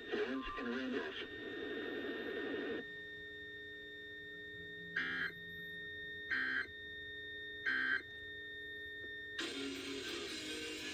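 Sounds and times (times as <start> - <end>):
faint steady hum: 0.0 - 10.9.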